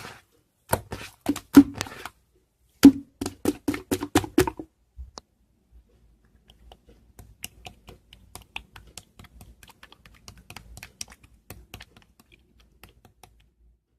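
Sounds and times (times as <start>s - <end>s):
keyboard typing: 6.4s - 13.6s.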